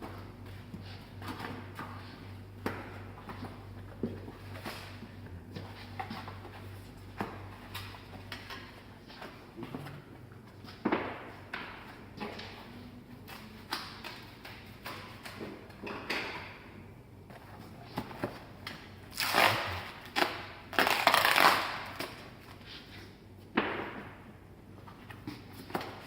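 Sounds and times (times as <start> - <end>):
packing material crinkling: 19.1 - 22.2.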